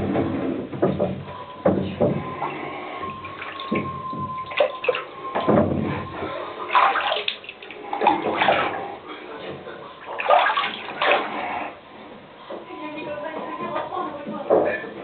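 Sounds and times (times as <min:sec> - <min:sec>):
water gurgling and splashing: 0:02.2 - 0:09.1, 0:10.0 - 0:11.8.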